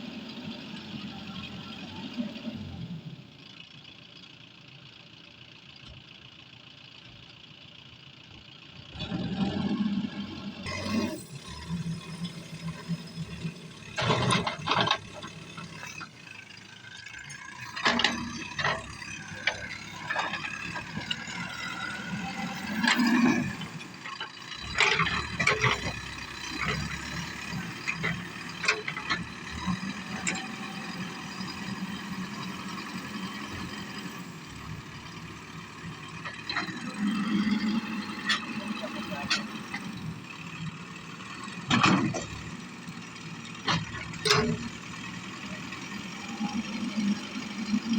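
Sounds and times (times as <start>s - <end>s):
diesel engine running: 0.0s - 47.9s
digging gear clanking and rattling: 10.7s - 40.5s.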